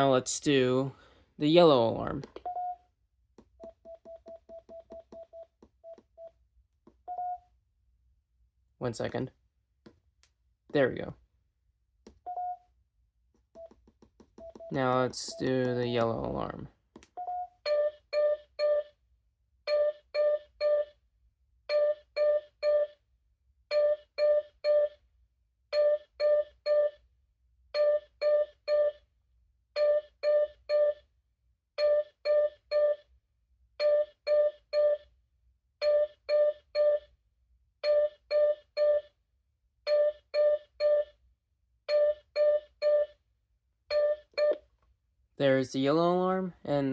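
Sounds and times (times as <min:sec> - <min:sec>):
patient monitor alarm beeps: 0:21.7 - 0:23.0, 0:31.8 - 0:33.1, 0:39.9 - 0:41.2, 0:41.9 - 0:43.2, 0:43.9 - 0:44.6.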